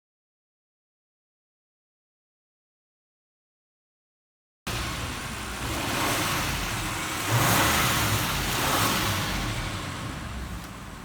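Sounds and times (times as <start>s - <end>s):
car engine revving with hiss: 4.7s - 11.0s.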